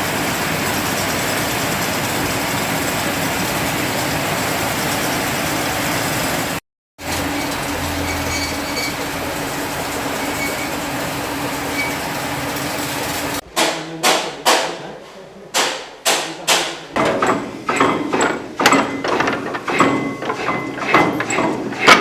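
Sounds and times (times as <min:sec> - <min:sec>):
sharp knocks: 0:13.6 - 0:14.8, 0:15.6 - 0:22.0
machine humming: 0:16.9 - 0:22.0.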